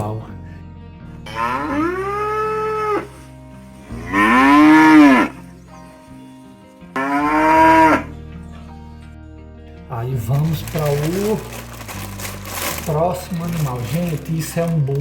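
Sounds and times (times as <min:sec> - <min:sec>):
cow mooing: 0:01.2 - 0:03.2, 0:03.9 - 0:05.4, 0:06.9 - 0:08.1.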